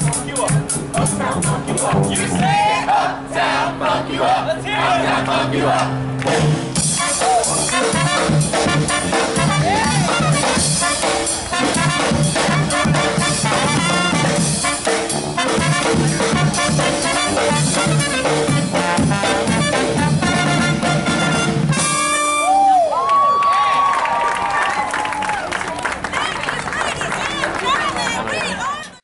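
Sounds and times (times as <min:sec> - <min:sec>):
tuba and drum bouncing beat: 0:00.0 - 0:02.7, 0:06.2 - 0:22.4
brass band playing swing tune: 0:00.0 - 0:22.7.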